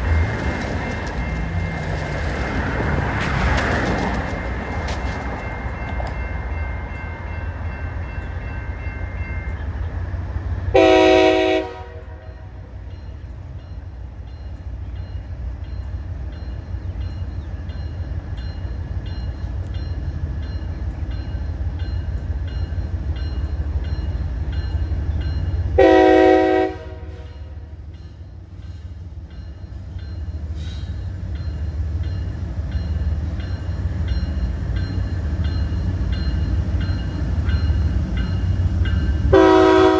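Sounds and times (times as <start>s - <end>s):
freight train rumble: 0.0s - 39.9s
train horn blasts: 10.7s - 12.7s, 25.8s - 27.6s, 39.3s - 39.9s.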